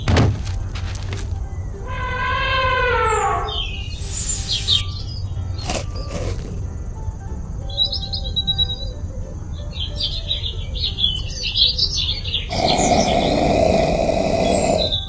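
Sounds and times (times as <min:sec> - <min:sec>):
small birds chirping: 0:03.0 - 0:07.0, 0:07.6 - 0:15.0.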